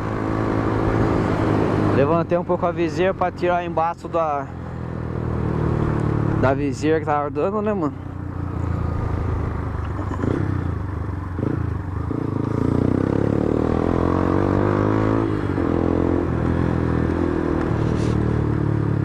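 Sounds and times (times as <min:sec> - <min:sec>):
motorcycle engine accelerating: 0:04.7 - 0:06.9, 0:07.8 - 0:19.0.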